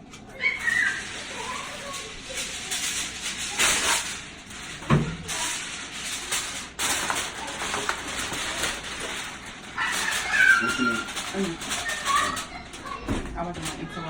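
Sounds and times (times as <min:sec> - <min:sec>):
kitchen handling rustling: 0:00.0 - 0:14.0.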